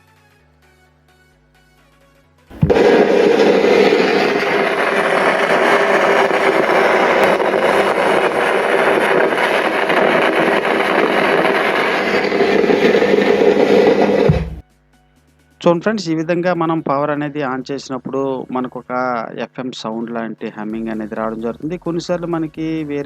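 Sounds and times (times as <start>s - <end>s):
speakers hissing loudly: 2.5s - 14.6s, 16.0s - 23.0s.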